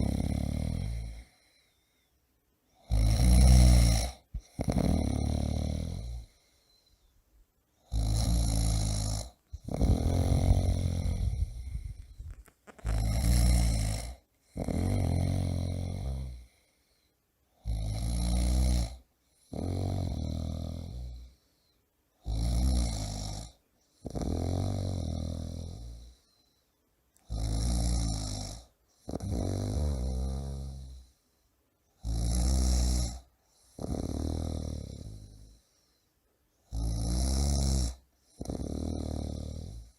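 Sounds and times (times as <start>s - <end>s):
man snoring loudly: 0.0s - 1.5s, 2.8s - 6.4s, 7.8s - 12.2s, 12.8s - 16.6s, 17.6s - 21.3s, 22.2s - 26.1s, 27.3s - 31.1s, 32.0s - 35.6s, 36.7s - 39.9s.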